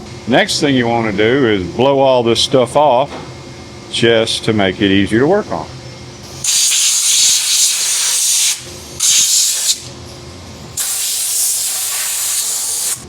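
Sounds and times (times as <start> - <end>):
compressed air blasts hissing: 6.4 - 9.9, 10.8 - 13.0.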